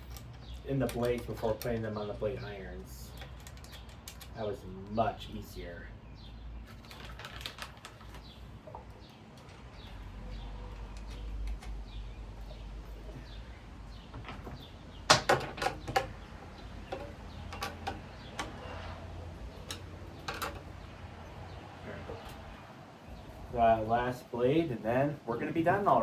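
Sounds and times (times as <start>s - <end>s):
metal screws clicking and knocking: 0.0s - 2.0s, 3.1s - 4.4s, 14.1s - 18.6s, 19.5s - 20.8s.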